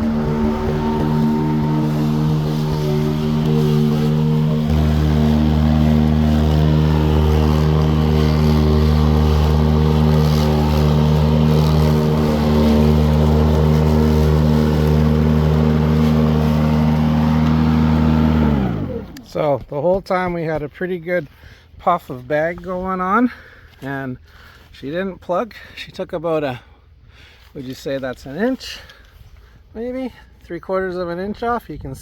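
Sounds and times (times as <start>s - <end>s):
low hum: 0.0s - 17.8s
electric lawn mower running: 0.0s - 19.3s.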